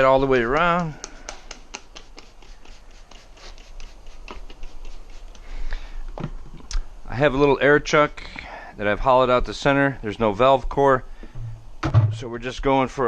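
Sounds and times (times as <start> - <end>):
hand rubbing lube on tire: 0.0 - 5.6.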